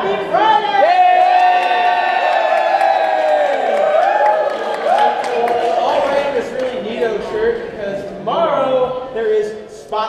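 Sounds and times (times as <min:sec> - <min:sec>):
group of voices cheering: 0:00.3 - 0:06.4.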